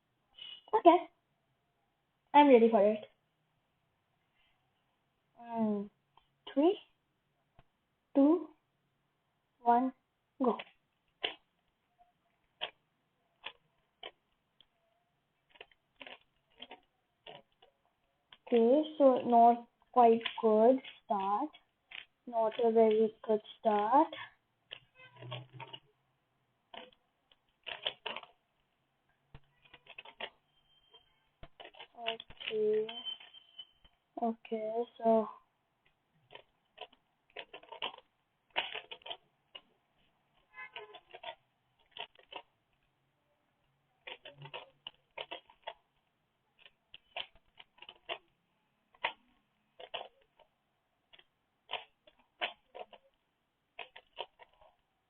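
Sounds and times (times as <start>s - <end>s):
puzzle cube clicking turns: 10.4s - 25.9s, 26.7s - 43.0s, 43.7s - 54.9s.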